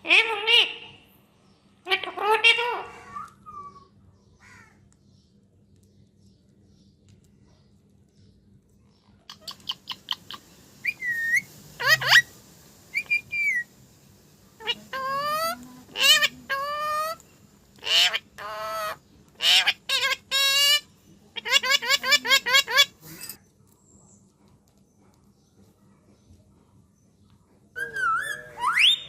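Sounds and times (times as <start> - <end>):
parakeet buzzy calls: 0.0 - 1.0, 9.3 - 13.7, 14.6 - 17.2, 17.8 - 23.3
parakeet clicks and chirps: 9.3 - 12.2
parakeet whistling: 9.3 - 12.3, 12.9 - 13.7, 27.8 - 29.0.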